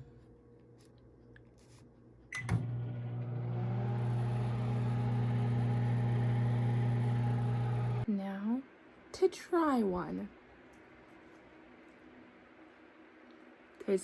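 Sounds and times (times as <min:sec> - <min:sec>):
microwave clicks: 0:02.3 - 0:03.3
microwave oven humming: 0:02.3 - 0:08.1.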